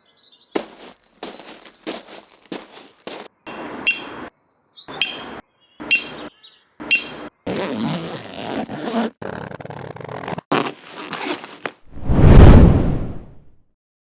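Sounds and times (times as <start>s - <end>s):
hammer striking metal tent pegs: 3.5s - 4.3s, 4.9s - 7.3s
rustling and scraping: 10.6s - 11.8s.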